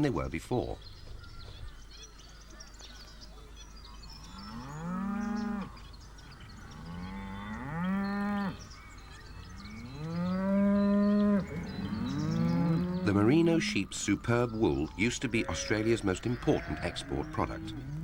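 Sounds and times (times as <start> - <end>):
livestock calling: 6.4 - 18.0.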